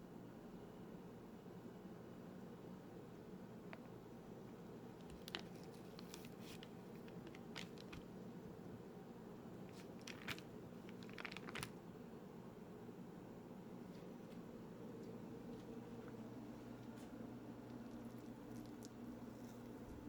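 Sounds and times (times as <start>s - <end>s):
low steady hum: 0.0s - 20.0s
clicks and crinkling: 5.0s - 8.2s, 9.7s - 11.8s, 16.8s - 20.0s.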